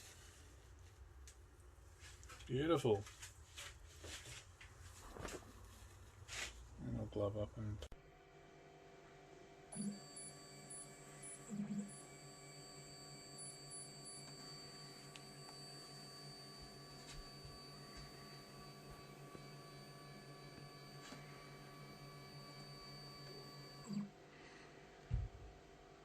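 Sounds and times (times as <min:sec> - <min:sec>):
printer humming with high whine: 0:09.6 - 0:24.3.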